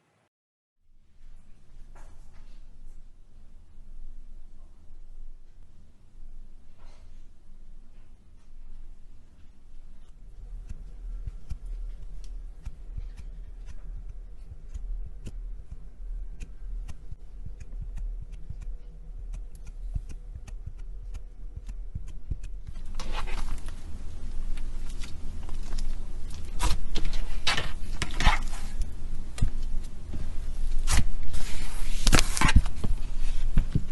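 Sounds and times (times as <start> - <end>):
slime crackling and squishing: 17.7 - 29.0.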